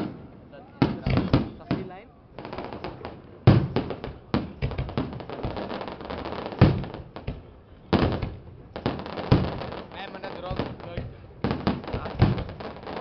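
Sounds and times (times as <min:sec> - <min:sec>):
fireworks bangs: 0:00.0 - 0:13.0
fireworks crackling: 0:00.0 - 0:13.0.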